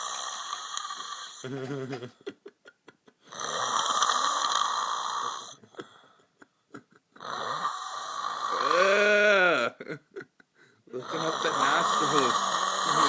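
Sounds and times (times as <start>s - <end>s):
man snoring loudly: 0.0s - 1.8s, 3.3s - 5.6s, 7.2s - 9.7s, 11.0s - 13.0s.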